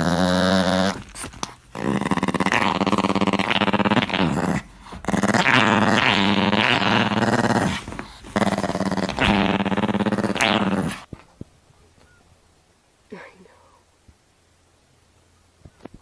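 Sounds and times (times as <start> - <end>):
dog growling: 0.0 - 11.1.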